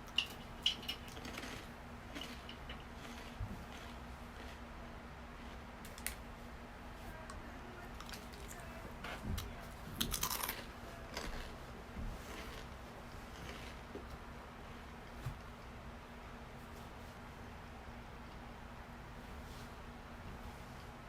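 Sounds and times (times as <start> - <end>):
rice crackers crunching: 0.0 - 4.6, 9.4 - 11.6, 12.2 - 13.9.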